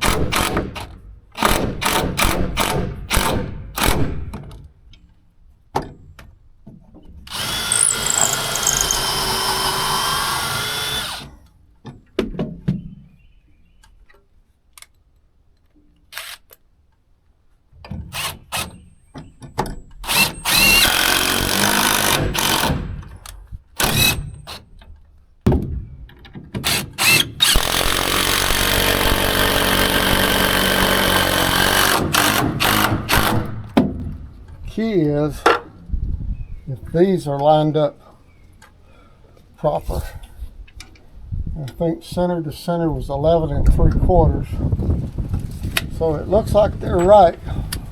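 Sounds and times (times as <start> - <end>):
power drill running: 7.3 - 11.4, 20.0 - 22.8, 23.8 - 24.6, 26.6 - 33.8.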